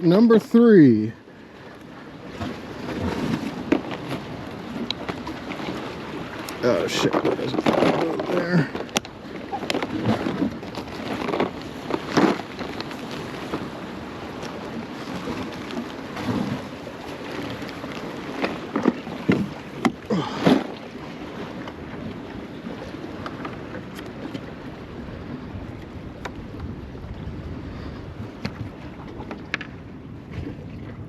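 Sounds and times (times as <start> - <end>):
surf washing against jetty: 0.0 - 31.0
wind on microphone: 1.9 - 31.0
sharp knocks and scrapes: 6.9 - 8.3.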